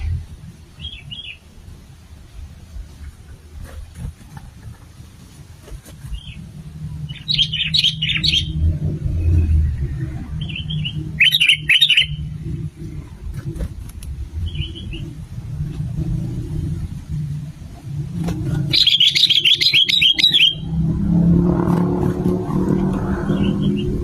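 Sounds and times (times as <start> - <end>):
bird singing: 0.7 - 1.4, 7.0 - 12.4, 14.4 - 15.2, 18.6 - 20.8, 23.1 - 24.0
low rumble: 6.1 - 18.8, 20.5 - 24.0
bird calls: 7.0 - 12.4, 14.4 - 15.2, 18.5 - 20.8, 23.2 - 24.0.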